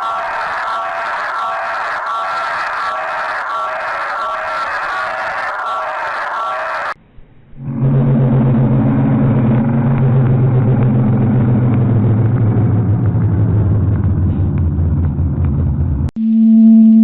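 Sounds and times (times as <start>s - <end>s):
emergency alert alarm humming: 7.6s - 14.4s, 16.2s - 17.0s.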